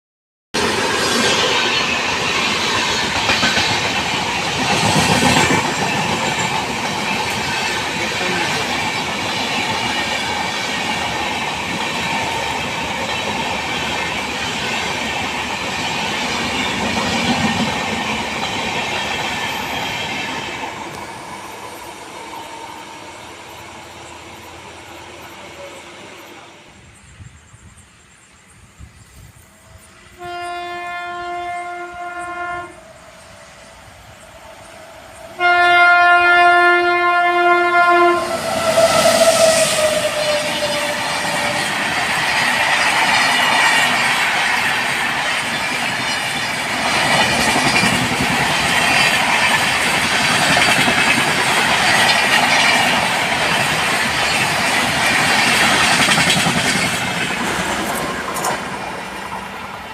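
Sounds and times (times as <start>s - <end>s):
train rushing past: 0.6s - 59.9s
train horn blasts: 30.1s - 32.8s, 35.4s - 41.0s.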